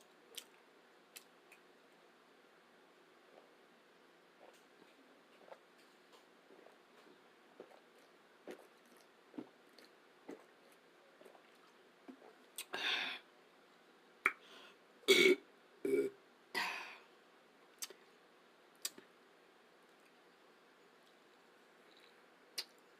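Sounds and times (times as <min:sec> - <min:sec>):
person burping: 0:15.1 - 0:16.8
soft mouth clicks: 0:21.9 - 0:22.8.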